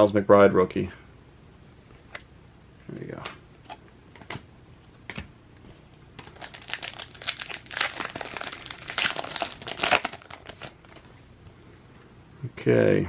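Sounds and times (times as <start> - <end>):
plastic wrapper crinkling: 5.8 - 11.3.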